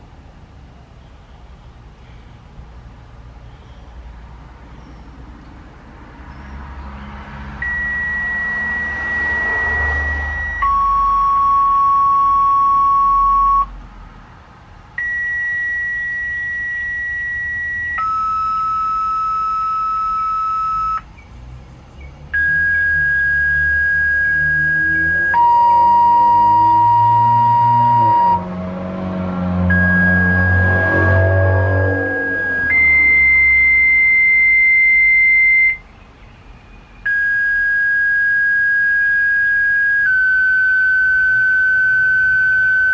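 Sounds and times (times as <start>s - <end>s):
two-tone radio beeps: 7.6s - 13.7s, 15.0s - 21.0s, 22.4s - 28.4s, 29.7s - 31.2s, 31.8s - 35.8s, 37.1s - 42.9s.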